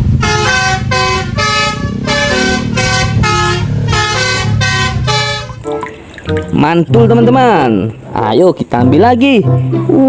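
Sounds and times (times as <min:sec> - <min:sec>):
bus horn playing a tune: 0:00.0 - 0:05.6
low engine rumble: 0:00.0 - 0:08.2.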